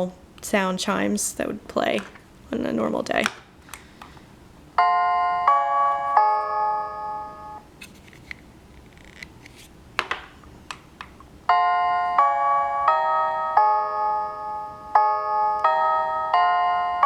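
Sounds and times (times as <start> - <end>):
doorbell chime tune: 4.8 - 7.6, 11.5 - 17.0.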